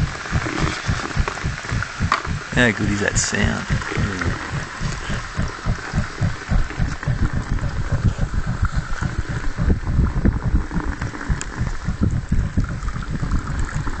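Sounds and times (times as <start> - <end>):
fire rumbling and puffing: 0.0 - 14.0.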